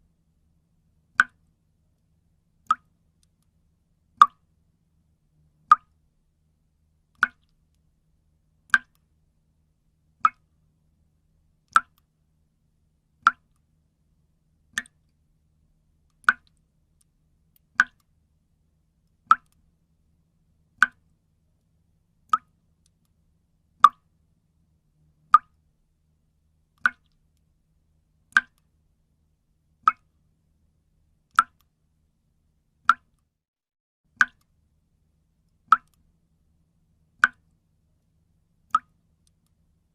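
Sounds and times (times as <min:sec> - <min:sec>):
water drops plopping into water: 0:01.2 - 0:01.4, 0:02.6 - 0:02.9, 0:04.2 - 0:04.4, 0:05.7 - 0:06.0, 0:07.2 - 0:07.6, 0:08.7 - 0:09.0, 0:10.2 - 0:10.4, 0:11.7 - 0:12.0, 0:13.2 - 0:13.6, 0:14.8 - 0:15.0, 0:16.2 - 0:16.6, 0:17.8 - 0:18.1, 0:19.3 - 0:19.6, 0:20.8 - 0:21.1, 0:22.3 - 0:22.5, 0:25.3 - 0:25.6, 0:26.8 - 0:27.2, 0:28.3 - 0:28.7, 0:29.8 - 0:30.1, 0:32.9 - 0:33.1, 0:34.2 - 0:34.5, 0:35.7 - 0:36.0, 0:37.2 - 0:37.5, 0:38.7 - 0:38.9.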